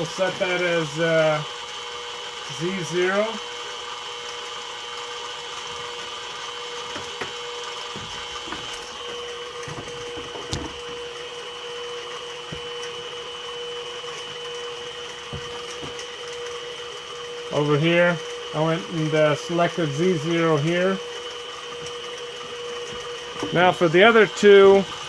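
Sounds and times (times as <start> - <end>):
milling machine humming: 0.0 - 25.0.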